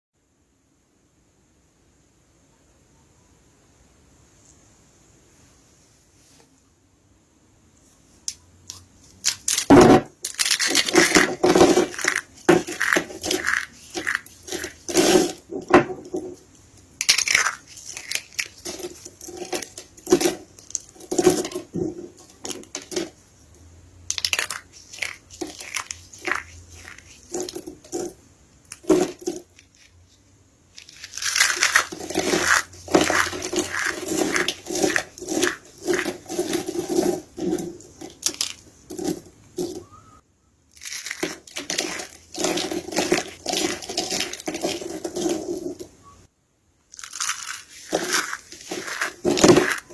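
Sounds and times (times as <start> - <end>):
soap being crushed: 9.2 - 23.2, 24.1 - 30.0, 30.8 - 39.8, 40.7 - 45.9, 46.9 - 49.9.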